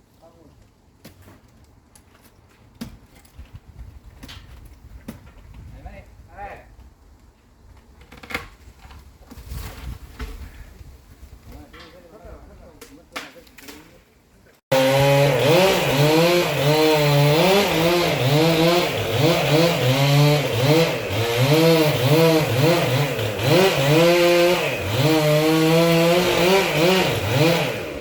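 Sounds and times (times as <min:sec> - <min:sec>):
chainsaw cutting wood: 0:14.7 - 0:28.0.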